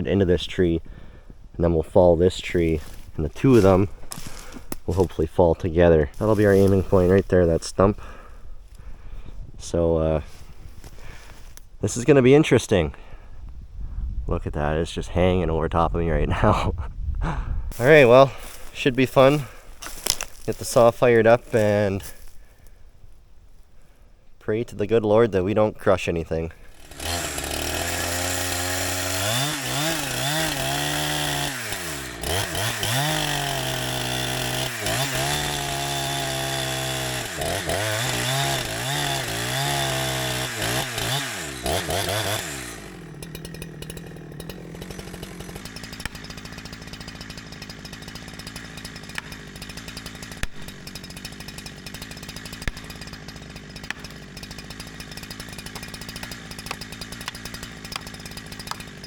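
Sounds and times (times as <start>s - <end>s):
chainsaw revving and idling: 1.8s - 8.3s, 17.7s - 22.7s, 26.1s - 59.0s.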